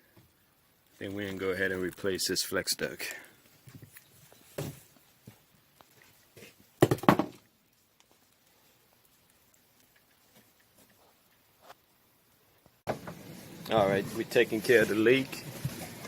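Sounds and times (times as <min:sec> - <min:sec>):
knocks and rustling: 0:03.7 - 0:04.9, 0:06.4 - 0:07.5.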